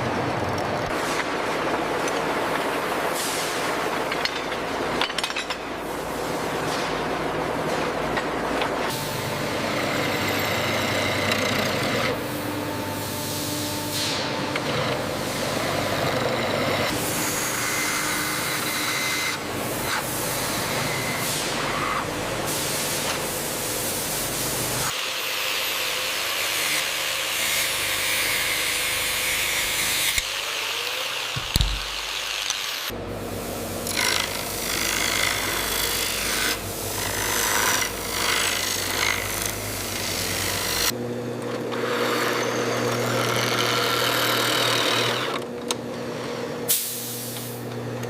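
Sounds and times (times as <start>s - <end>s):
low thump: 31.4s - 32.0s.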